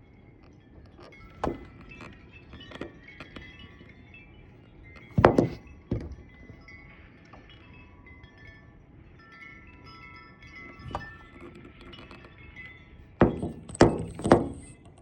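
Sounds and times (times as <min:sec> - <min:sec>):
wind chime ringing: 0:00.6 - 0:14.9
loud thumps: 0:05.1 - 0:06.2.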